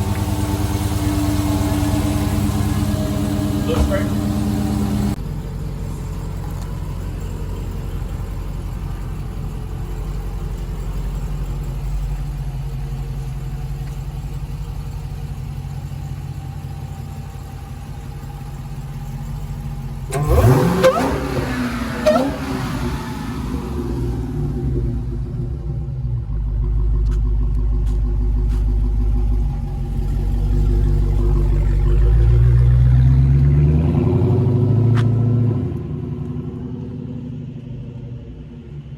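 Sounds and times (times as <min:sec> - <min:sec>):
engine revving sharply: 0:00.0 - 0:05.2, 0:20.1 - 0:24.9
car engine idling: 0:00.0 - 0:38.9.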